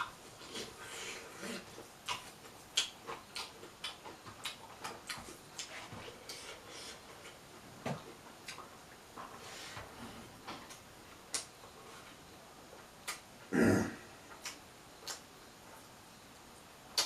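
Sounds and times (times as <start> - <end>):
chewing with crisp clicks and smacks: 0.0 - 9.4, 10.5 - 11.6, 12.7 - 13.3, 14.3 - 15.8, 16.6 - 17.0.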